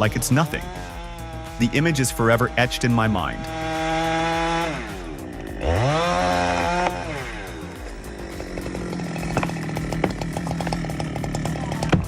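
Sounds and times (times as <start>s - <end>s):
chainsaw engine: 0.0s - 12.0s
wood snapping: 7.9s - 12.0s.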